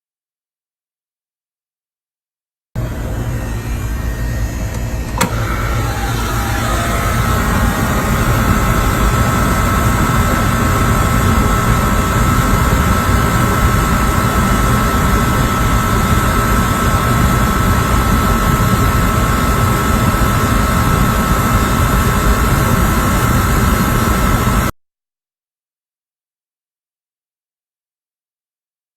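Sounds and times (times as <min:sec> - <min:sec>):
high whine: 0:02.8 - 0:24.7
hvac equipment rumbling: 0:02.8 - 0:24.7.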